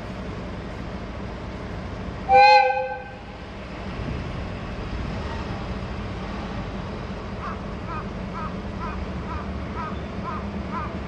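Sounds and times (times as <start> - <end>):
train horn blast: 2.3 - 3.4.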